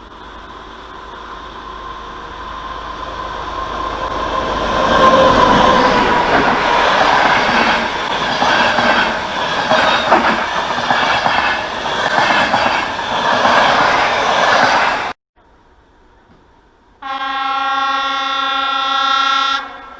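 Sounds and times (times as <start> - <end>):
train wheels clattering: 4.0 - 15.1.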